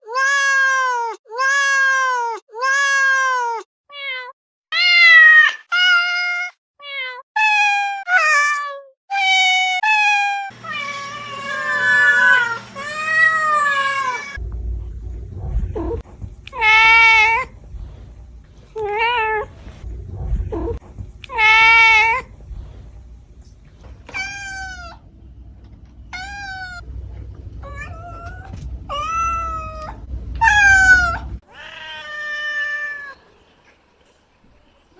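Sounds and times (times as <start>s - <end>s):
cat meowing: 0.0s - 14.4s, 24.1s - 25.0s, 26.1s - 26.8s, 27.6s - 33.2s
low background hum: 10.5s - 34.9s.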